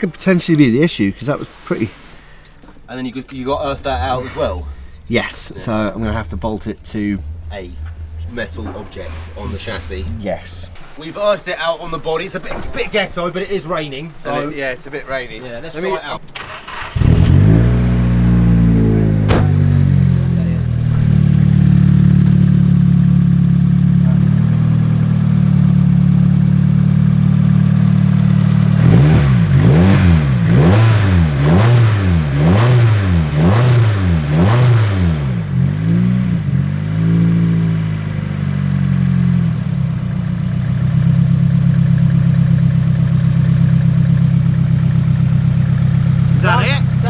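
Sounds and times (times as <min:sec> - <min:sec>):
car engine idling with misfire: 0:00.0 - 0:13.0, 0:16.2 - 0:47.0
car engine revving: 0:03.4 - 0:11.1, 0:16.3 - 0:47.0.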